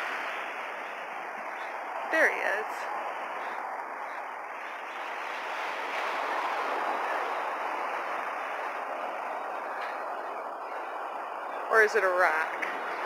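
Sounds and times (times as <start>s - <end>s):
surf on rocky shore: 0.0s - 10.0s.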